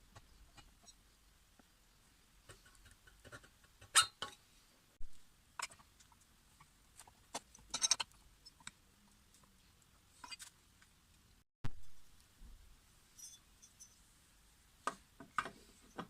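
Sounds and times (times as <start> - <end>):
small parts and tools clicking: 5.6 - 11.2.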